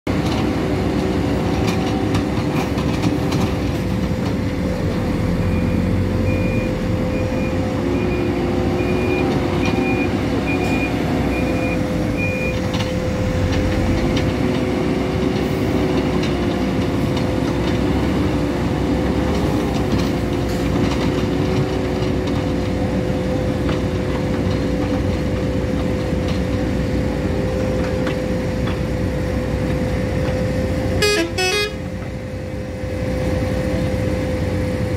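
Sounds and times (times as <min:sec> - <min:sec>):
backhoe diesel engine working: 0:00.1 - 0:34.9
reversing alarm beeps: 0:05.4 - 0:12.7.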